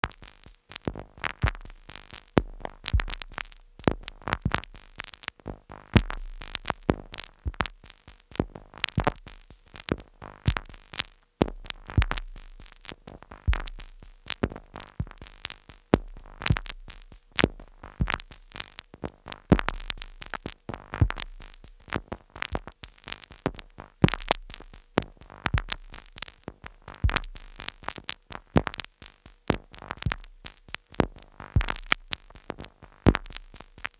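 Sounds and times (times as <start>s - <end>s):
deep low thuds: 13.5s - 13.9s
sharp clicks and noise hits: 24.0s - 28.8s, 31.0s - 33.9s.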